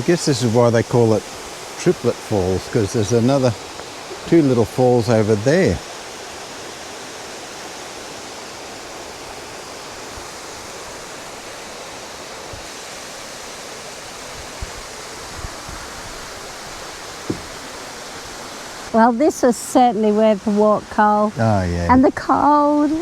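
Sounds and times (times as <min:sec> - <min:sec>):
waterfall rushing: 0:00.0 - 0:23.0
soft low thumps: 0:17.2 - 0:17.7.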